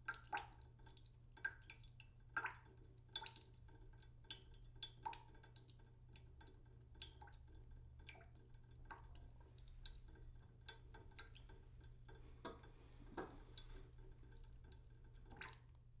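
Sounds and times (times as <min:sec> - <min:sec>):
water dripping into a pot: 0:00.0 - 0:16.0.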